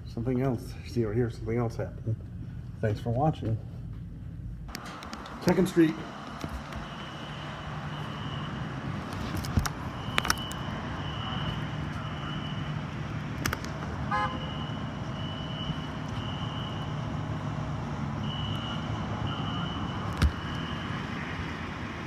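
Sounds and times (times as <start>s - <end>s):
low traffic hum: 0.0s - 22.0s
fire alarm horn beeping: 6.6s - 8.8s, 9.8s - 12.9s, 14.0s - 17.3s, 18.2s - 21.0s.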